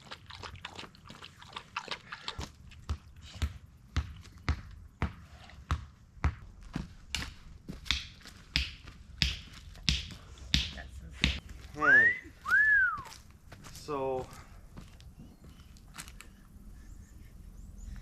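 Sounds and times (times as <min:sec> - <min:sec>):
footsteps on grass and dirt: 0:02.4 - 0:16.5.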